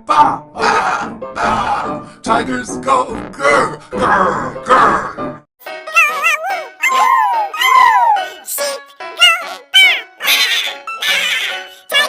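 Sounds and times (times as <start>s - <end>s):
falling animal cry: 6.0s - 8.0s
high wavering animal cry: 6.0s - 8.2s, 9.2s - 11.7s.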